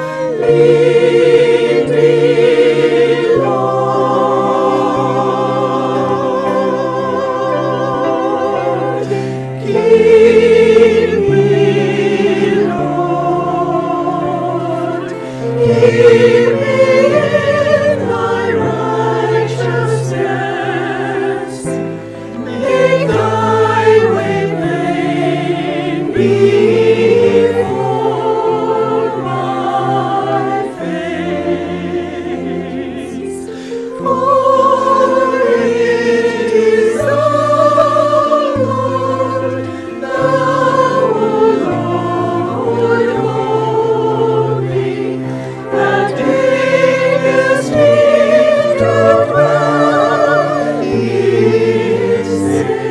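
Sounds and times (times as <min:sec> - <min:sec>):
church choir singing: 0:00.0 - 0:52.9
instrumental accompaniment: 0:00.0 - 0:52.9.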